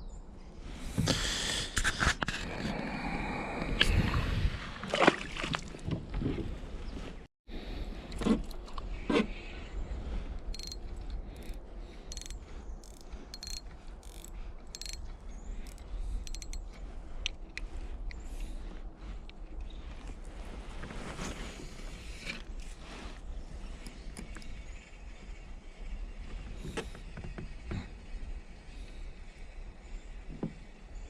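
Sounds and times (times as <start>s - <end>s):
low wind rumble: 0.0s - 31.0s
fishing reel clicking: 10.5s - 10.8s, 11.4s - 15.0s, 15.6s - 16.6s.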